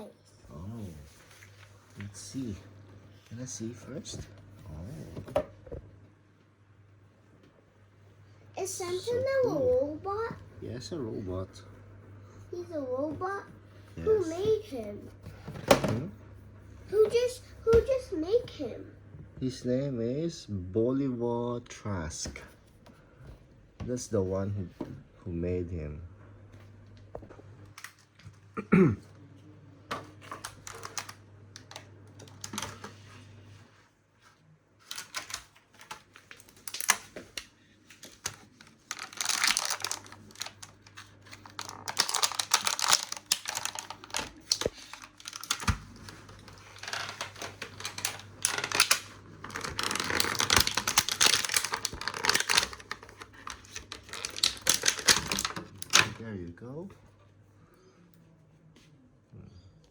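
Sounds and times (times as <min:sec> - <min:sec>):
plastic and cardboard packaging crinkling: 0:30.2 - 0:33.1, 0:34.8 - 0:56.2.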